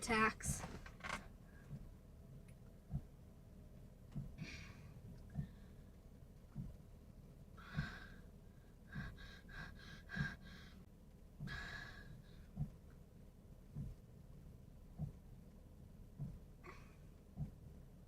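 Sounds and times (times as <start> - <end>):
short breathy pulses: 4.2 - 6.0, 7.6 - 12.8
person breathing with sighs: 4.3 - 6.0, 7.6 - 12.6
soft low thump: 6.5 - 6.8, 13.7 - 14.1, 14.9 - 15.3, 16.2 - 16.5, 17.4 - 17.7.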